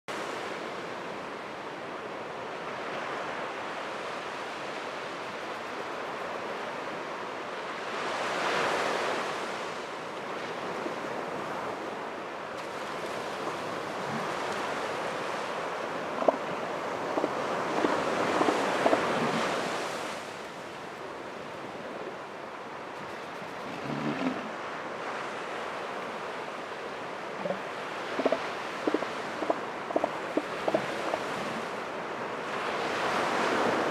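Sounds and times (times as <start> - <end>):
elephant seal snoring: 16.2 - 19.5, 23.7 - 24.5, 27.4 - 27.6, 28.2 - 31.3
elephant seal low grunt: 23.7 - 24.5, 27.4 - 27.6.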